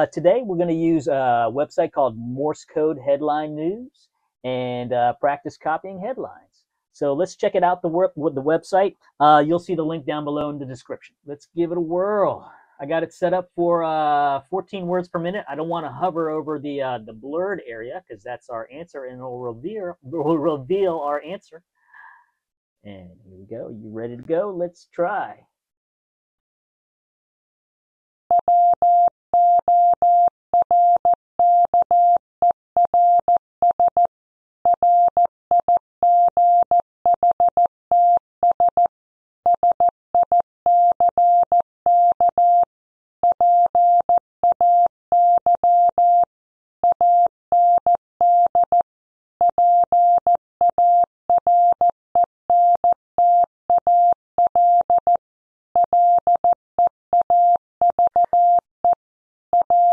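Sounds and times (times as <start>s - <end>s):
morse code beeps: 28.3s - 34.1s, 34.8s - 38.9s, 39.5s - 48.8s, 49.4s - 55.2s, 55.8s - 59.9s.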